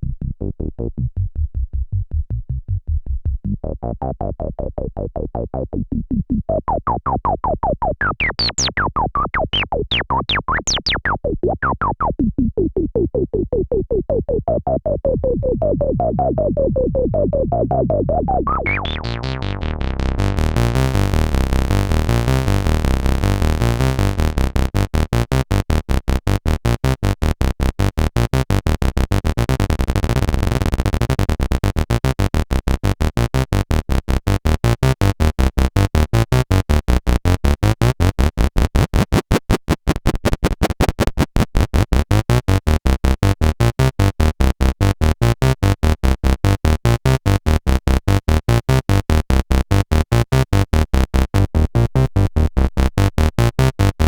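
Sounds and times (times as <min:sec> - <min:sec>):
synth bass line: 0:00.0 - 0:24.9, 0:49.4 - 0:54.0.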